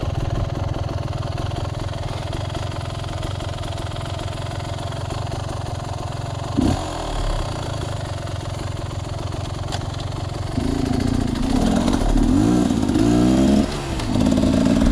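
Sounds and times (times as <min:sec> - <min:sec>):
sawmill engine revving: 0:10.6 - 0:14.9.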